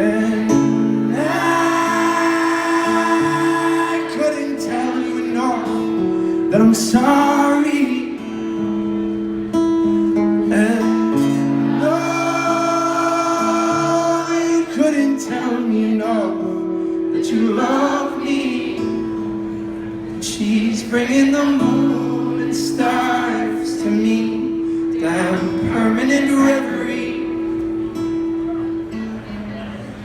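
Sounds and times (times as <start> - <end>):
man singing: 0.0 - 8.8, 10.4 - 27.7
acoustic guitar chords: 0.0 - 30.0.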